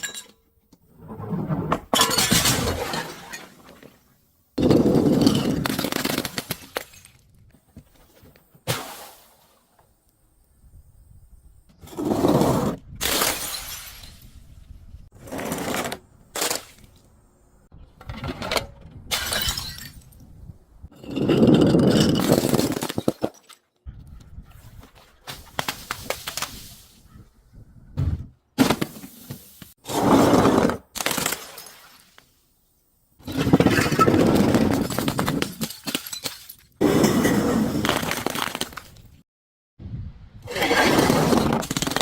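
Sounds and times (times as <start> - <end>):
glass bottles smashing: 0.0 - 0.4, 2.0 - 3.7, 13.0 - 14.4, 19.1 - 20.1, 33.5 - 36.8.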